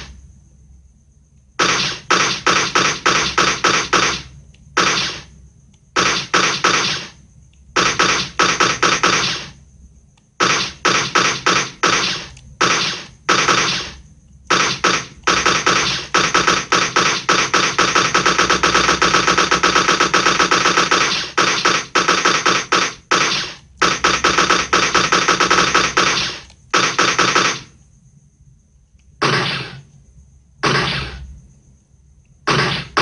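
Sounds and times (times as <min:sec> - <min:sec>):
automatic gunfire bursts: 0:01.6 - 0:05.3, 0:06.0 - 0:07.2, 0:07.8 - 0:09.6, 0:10.4 - 0:27.7.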